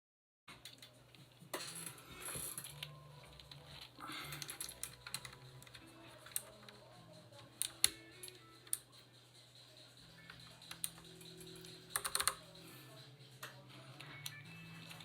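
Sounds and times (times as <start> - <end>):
mechanical keyboard typing clicks: 10.6 - 12.5.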